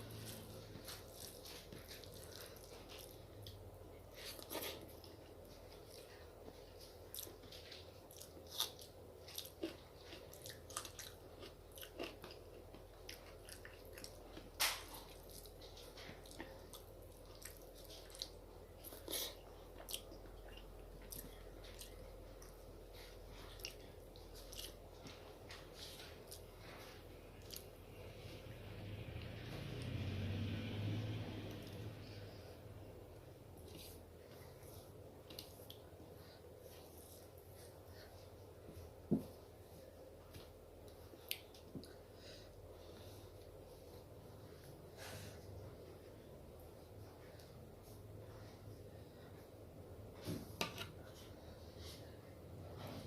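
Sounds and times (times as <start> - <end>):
person chewing: 0.0 - 27.8, 40.8 - 43.6.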